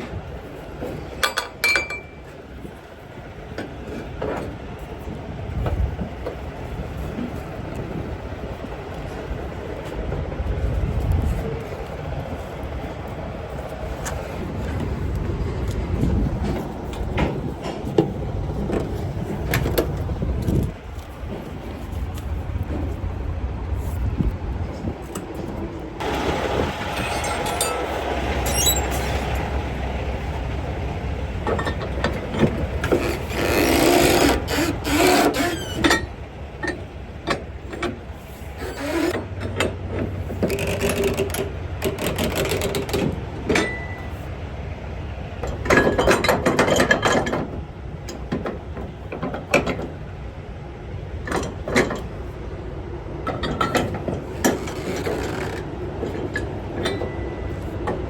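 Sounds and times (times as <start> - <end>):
low steady rumble: 0.0 - 49.2
metal clanks and clicks: 0.9 - 2.4, 26.9 - 29.5, 31.4 - 38.0, 38.6 - 44.1, 45.4 - 50.0, 51.2 - 52.2, 53.2 - 58.0
rapid ratcheting: 40.4 - 43.1.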